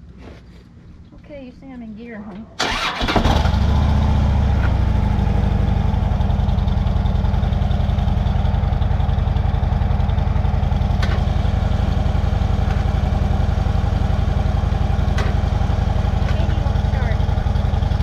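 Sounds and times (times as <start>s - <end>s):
motorcycle engine idling: 2.6s - 18.0s.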